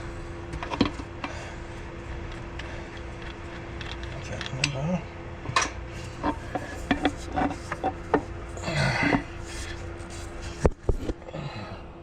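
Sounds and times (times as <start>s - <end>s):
metal scraping rub: 5.9s - 11.0s.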